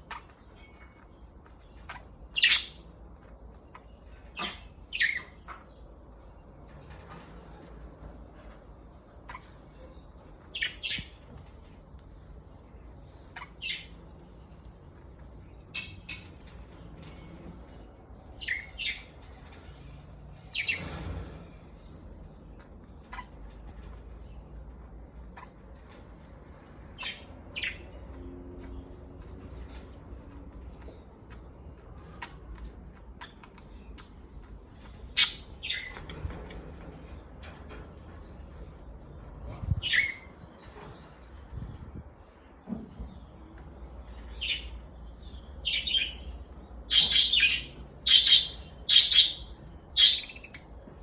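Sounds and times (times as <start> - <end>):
birds chirping and squawking: 0.0 - 7.8, 8.4 - 51.0
bird squawk: 2.4 - 2.8, 46.9 - 50.6.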